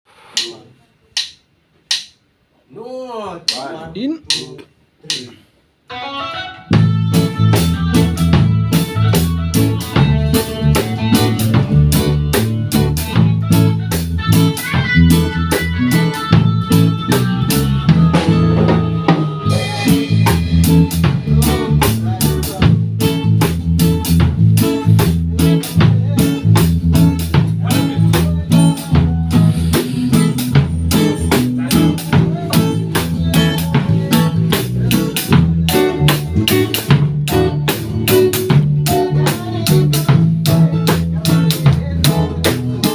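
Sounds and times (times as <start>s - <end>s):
drum hits: 3.4s - 5.4s, 16.4s - 42.9s
band playing live: 5.9s - 42.9s
low bass part: 6.8s - 14.5s.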